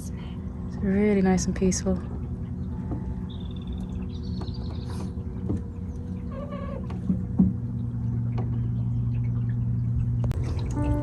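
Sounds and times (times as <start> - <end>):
electric boat motor humming: 0.0 - 11.0
birds chirping: 0.1 - 11.0
short knocks: 6.4 - 7.7.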